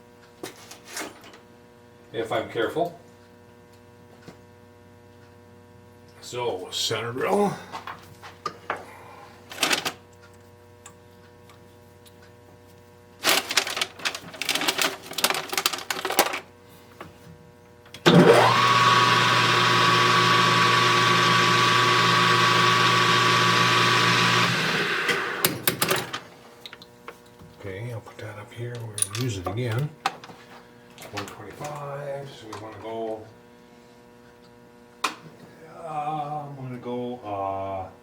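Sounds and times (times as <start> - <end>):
lathe motor whining: 18.1 - 26.2.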